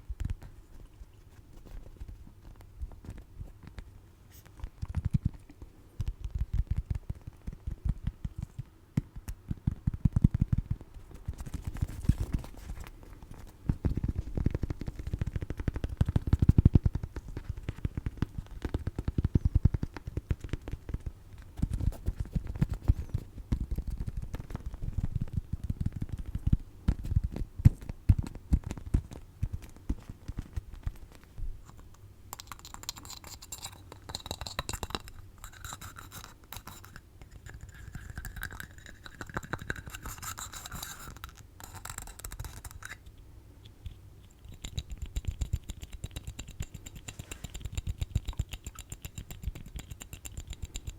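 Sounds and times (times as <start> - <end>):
scratching and tapping on objects: 0.0 - 50.9.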